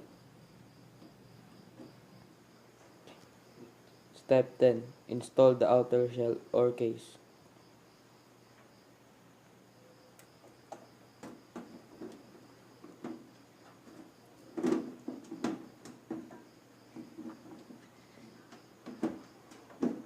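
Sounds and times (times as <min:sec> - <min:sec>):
computer case clicks and knocks: 0:10.7 - 0:17.8, 0:18.5 - 0:20.0.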